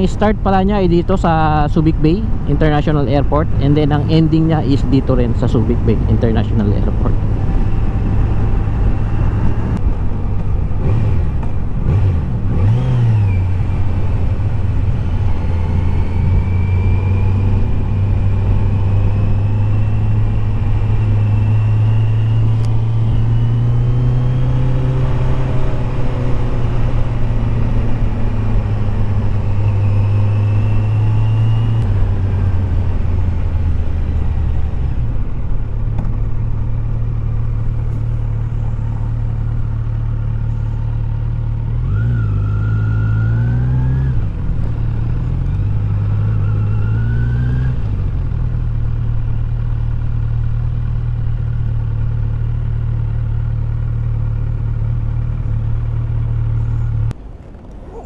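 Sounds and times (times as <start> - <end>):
motorcycle engine running: 47.9 - 58.0.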